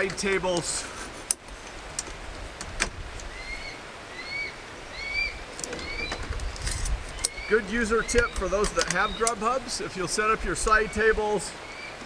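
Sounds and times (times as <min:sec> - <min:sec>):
camp table parts clicking: 0:00.0 - 0:03.3, 0:08.0 - 0:09.5.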